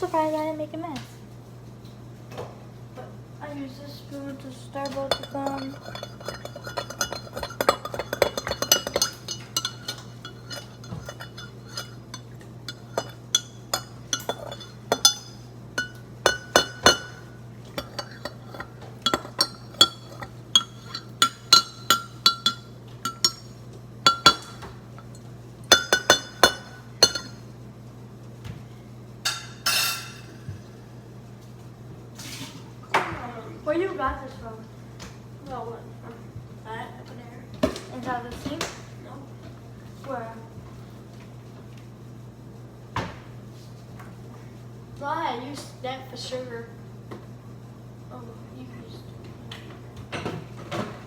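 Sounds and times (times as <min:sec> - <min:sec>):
spoon scraping cup: 0:04.8 - 0:17.2, 0:17.8 - 0:23.4
spoon clinking in a cup: 0:04.8 - 0:27.4, 0:29.3 - 0:30.4.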